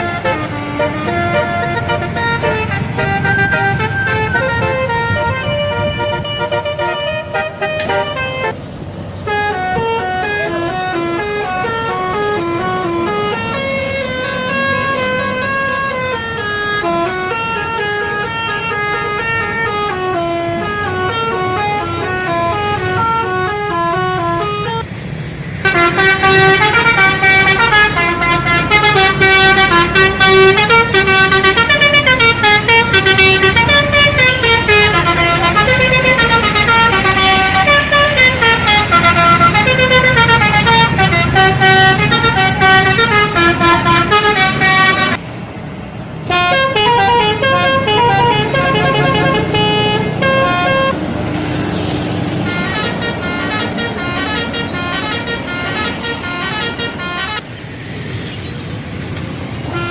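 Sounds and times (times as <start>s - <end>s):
musical bus horn melodies: 0.0s - 8.6s, 9.2s - 24.9s, 25.6s - 45.3s, 46.2s - 57.5s, 59.6s - 59.9s.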